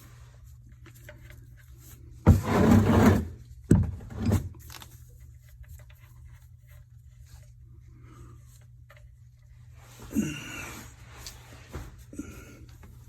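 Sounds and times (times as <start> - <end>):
tool scraping rasp: 2.3 - 3.3.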